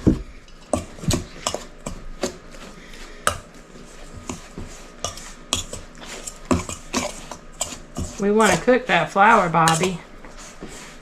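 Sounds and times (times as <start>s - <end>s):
utensils knocking against mixing bowl: 6.4s - 8.6s.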